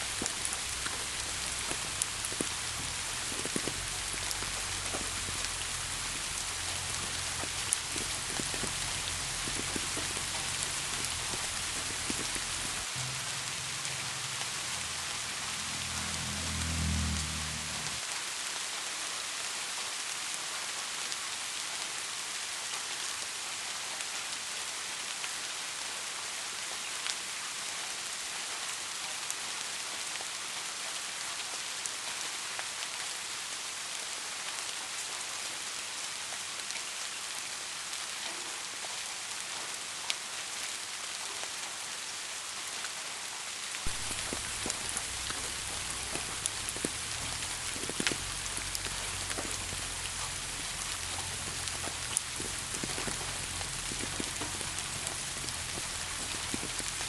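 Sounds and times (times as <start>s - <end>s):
drops ticking: 0.0s - 12.9s, 43.9s - 57.0s
low rumble: 0.0s - 18.0s
steady rain hiss: 0.0s - 57.0s.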